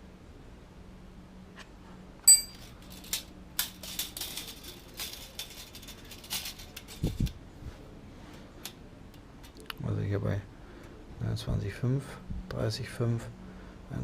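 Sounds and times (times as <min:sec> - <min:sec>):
metal spanner clinking on bolt: 0:02.3 - 0:07.0.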